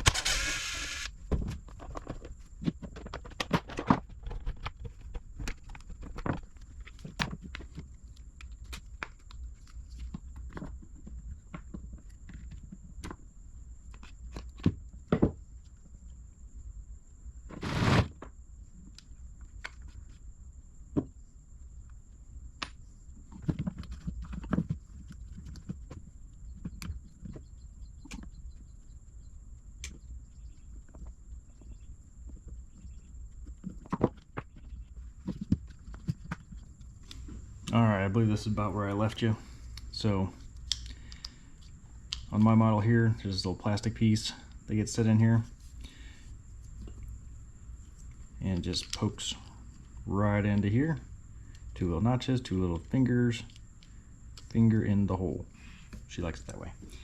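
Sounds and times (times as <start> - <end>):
small parts and tools clicking: 0.0 - 1.2, 39.1 - 42.4.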